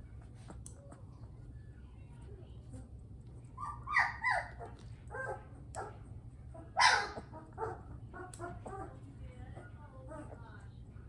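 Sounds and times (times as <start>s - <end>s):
puppy yelping and whining: 3.6s - 9.0s.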